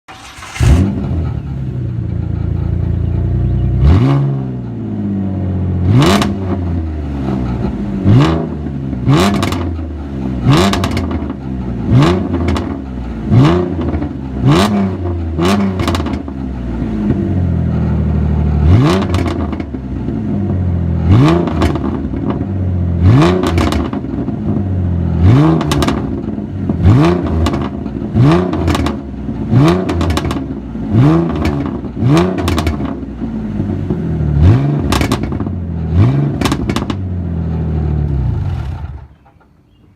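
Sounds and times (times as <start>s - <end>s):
car engine revving: 0.1s - 1.8s, 3.5s - 39.0s
exhaust pops and crackles: 9.2s - 9.8s, 10.5s - 11.4s, 12.1s - 12.9s, 15.3s - 17.2s, 18.8s - 19.8s, 21.3s - 22.5s, 23.3s - 24.5s, 25.5s - 30.6s, 31.2s - 33.1s, 34.7s - 39.4s.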